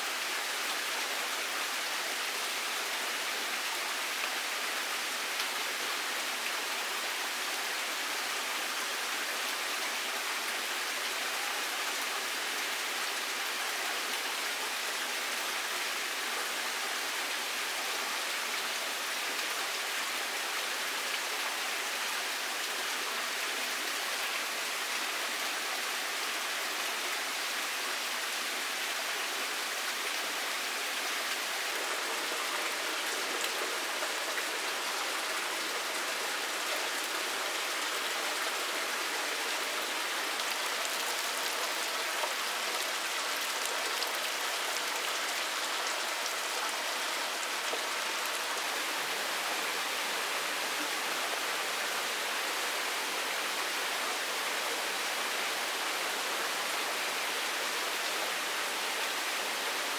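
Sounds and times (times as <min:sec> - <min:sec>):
steady hiss of water: 0:00.0 - 0:59.9.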